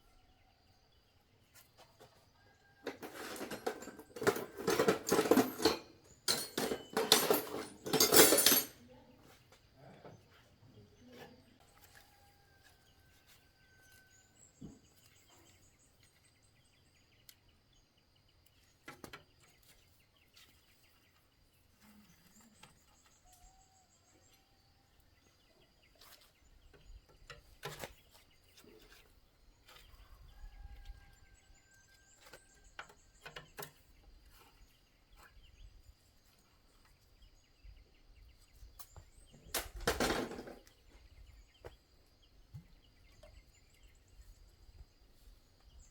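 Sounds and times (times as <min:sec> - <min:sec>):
faint bird chirps and trills: 0:08.8 - 0:39.8.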